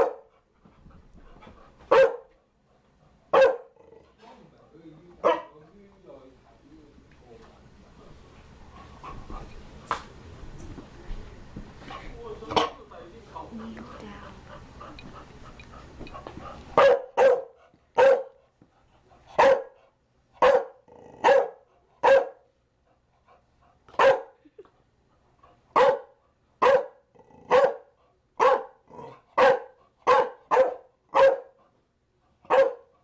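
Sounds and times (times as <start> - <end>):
dog barking: 0.0 - 0.3, 1.9 - 2.3, 3.3 - 3.8, 5.2 - 5.6, 16.8 - 18.4, 19.4 - 19.8, 20.4 - 22.5, 24.0 - 24.4, 25.7 - 28.8, 29.4 - 31.6, 32.5 - 32.9.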